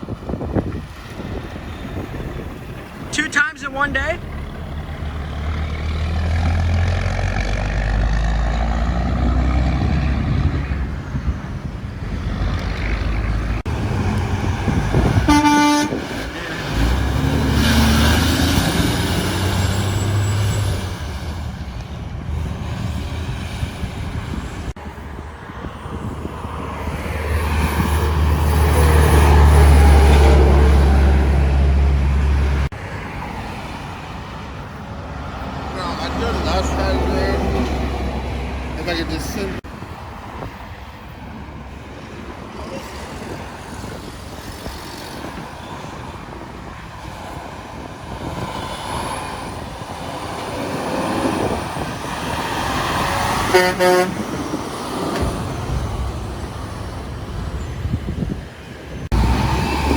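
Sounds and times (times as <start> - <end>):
trucks rumbling past: 0.0 - 59.9
truck horn blast: 15.2 - 16.1, 53.4 - 54.4.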